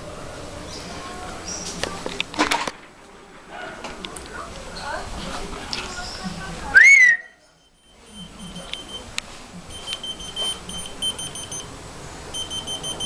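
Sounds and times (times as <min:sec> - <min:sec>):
key finder short high beeps: 0:07.5 - 0:09.1, 0:09.7 - 0:11.7, 0:12.3 - 0:13.0.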